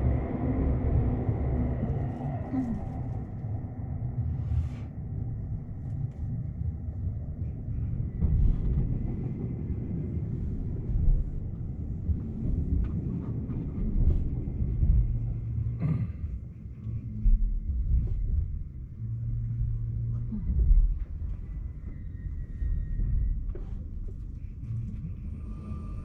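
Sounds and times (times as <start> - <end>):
train wheels rumbling on rail: 7.0 - 26.0.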